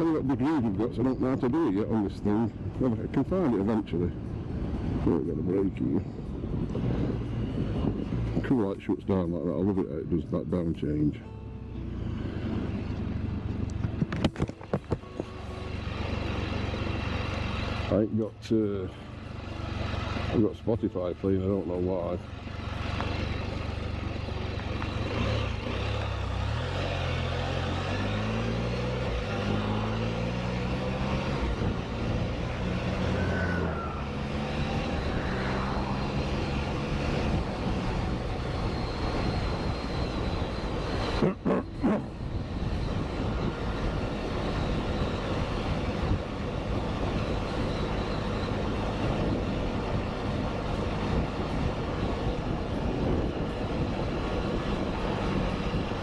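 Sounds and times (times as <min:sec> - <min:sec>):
wind and road noise: 0:00.0 - 0:56.0
motorcycle engine pulling away: 0:22.5 - 0:41.2.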